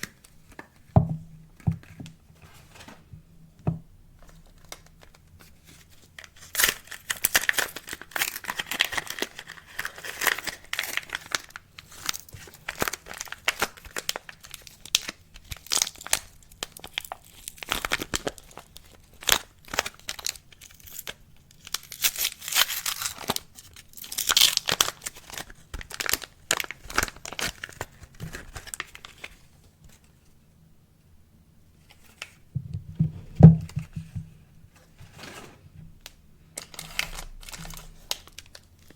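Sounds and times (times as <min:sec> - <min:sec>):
soap packaging crinkling and tearing: 0:00.0 - 0:00.8, 0:04.2 - 0:30.1, 0:35.1 - 0:38.9.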